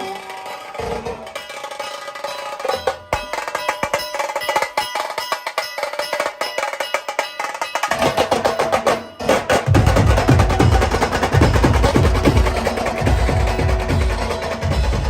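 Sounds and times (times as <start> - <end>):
rapid sharp drumming: 0.0 - 15.0
deep drum beats: 7.9 - 15.0.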